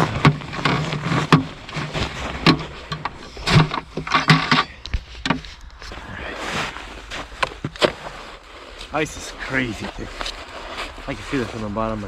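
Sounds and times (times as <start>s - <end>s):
footsteps on ice: 4.8s - 12.0s.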